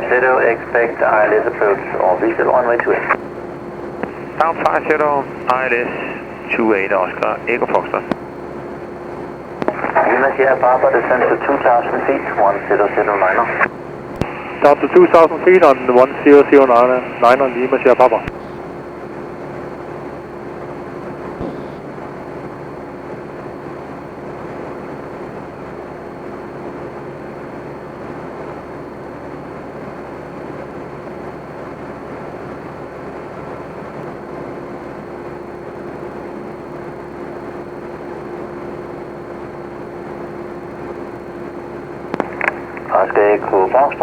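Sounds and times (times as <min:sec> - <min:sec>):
aircraft engine and propeller droning: 0:00.0 - 0:44.0.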